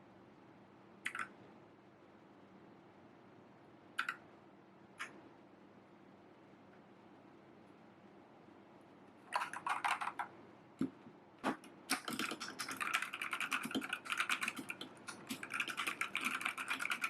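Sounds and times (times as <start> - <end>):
mechanical keyboard typing: 1.0 - 1.3, 4.0 - 4.2, 9.3 - 10.3, 11.5 - 17.0.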